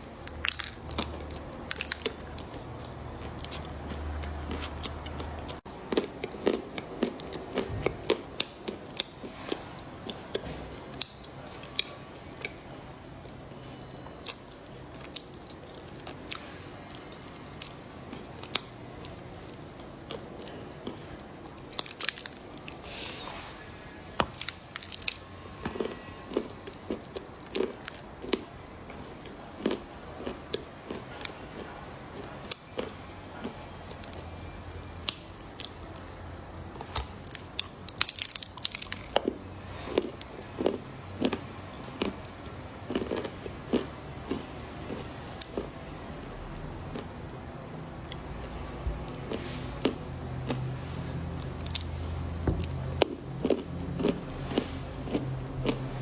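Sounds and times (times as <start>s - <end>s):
chocolate crunching: 0.1s - 12.8s, 14.2s - 22.9s, 23.8s - 45.7s, 49.1s - 56.0s
chewing: 0.2s - 12.9s, 24.3s - 45.7s, 49.1s - 56.0s.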